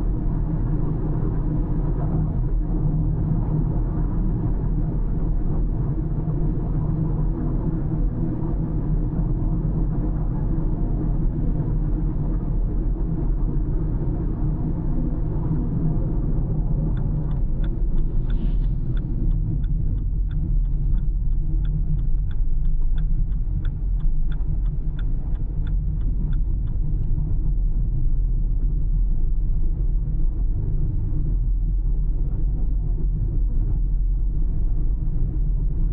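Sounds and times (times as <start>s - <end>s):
car road and engine rumble: 0.0s - 35.9s
turn-signal indicator ticking: 16.9s - 26.8s.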